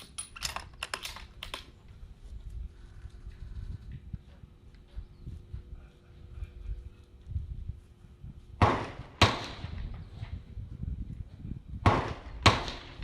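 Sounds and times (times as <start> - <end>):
rifle gunshots: 8.6 - 9.8, 11.8 - 13.0.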